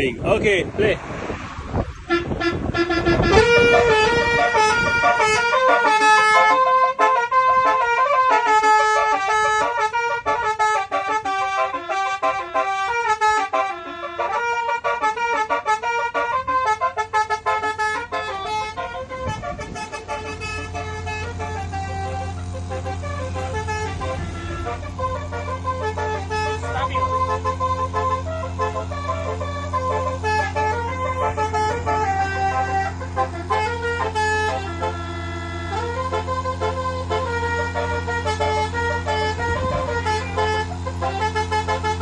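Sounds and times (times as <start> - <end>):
air horn playing a tune: 1.8 - 42.0
steady low hum: 16.5 - 42.0.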